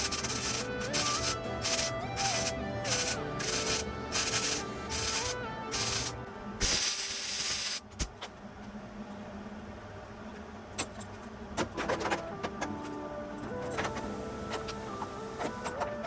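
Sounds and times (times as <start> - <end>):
background music: 0.0 - 7.3, 11.8 - 16.0.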